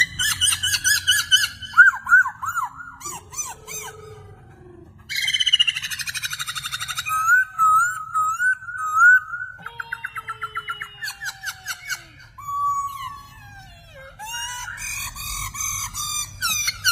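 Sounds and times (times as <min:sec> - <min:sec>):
parrot chirping and whistling: 0:00.0 - 0:03.9, 0:05.1 - 0:16.9.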